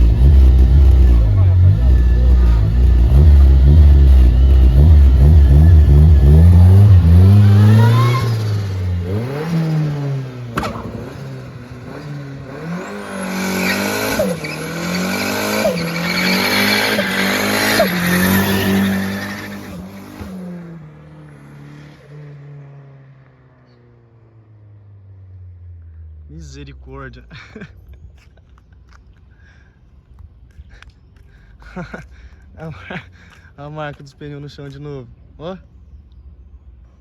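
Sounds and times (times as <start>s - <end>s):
car accelerating through gears: 0.0s - 23.0s.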